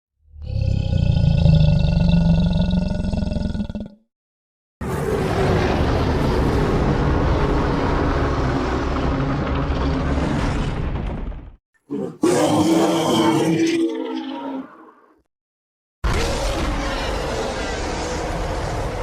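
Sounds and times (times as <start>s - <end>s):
monster roar: 0.3s - 4.0s, 11.9s - 15.1s, 16.0s - 19.0s.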